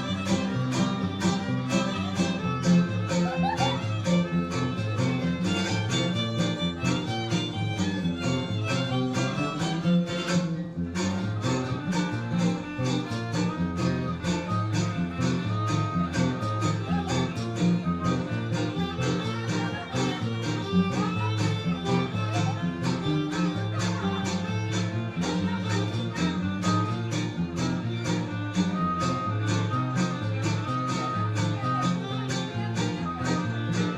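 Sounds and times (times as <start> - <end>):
strummed guitars: 0.0 - 33.9
violin melody: 0.0 - 33.9.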